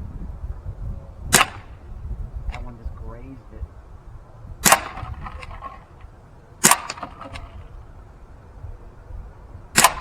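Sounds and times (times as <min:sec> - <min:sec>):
air pistol pop: 0:01.3 - 0:01.8, 0:04.6 - 0:05.5, 0:06.6 - 0:07.5, 0:09.8 - 0:10.0.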